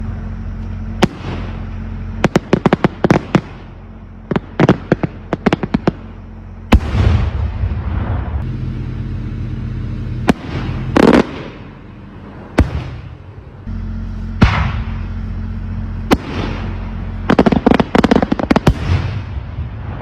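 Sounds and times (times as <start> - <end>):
crackling hiss: 0.0 - 20.0
firework bangs: 0.8 - 8.5, 10.1 - 20.0
firework cracks: 1.0 - 8.4, 10.2 - 13.4, 16.0 - 20.0.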